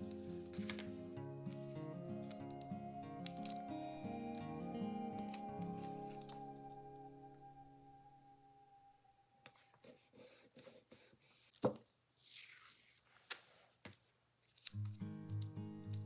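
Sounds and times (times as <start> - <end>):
hands handling paper: 0.0 - 3.7
music: 0.0 - 9.2, 14.8 - 16.0.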